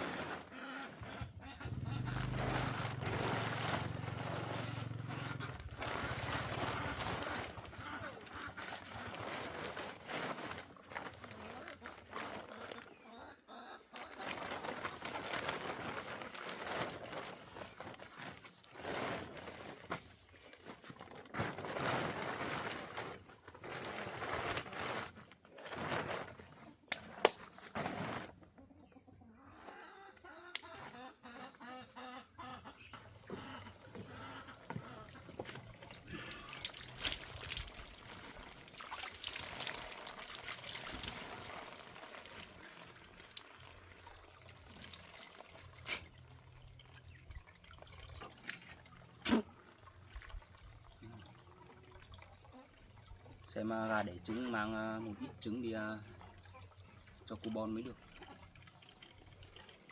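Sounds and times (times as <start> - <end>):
chickens clucking: 0.5 - 3.3, 28.4 - 36.6
splashing or rustling bursts: 1.6 - 12.9, 14.0 - 28.4, 33.0 - 59.9.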